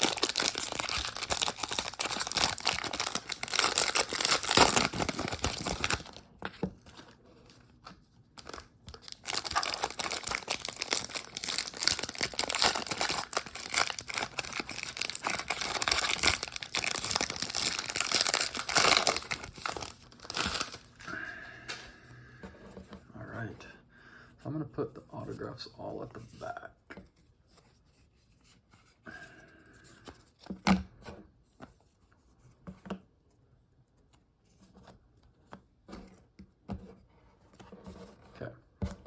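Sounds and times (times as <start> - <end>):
wrapper crinkling and tearing: 0.0 - 6.2, 8.4 - 21.1.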